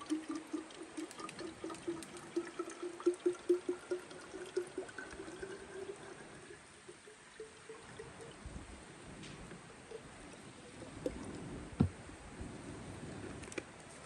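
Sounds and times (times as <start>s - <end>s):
water glugging into container: 0.0s - 8.5s.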